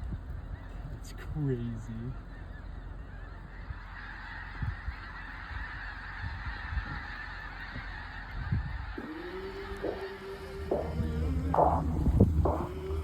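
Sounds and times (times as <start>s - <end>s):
geese honking: 0.3s - 13.0s
held low musical note: 9.0s - 13.0s.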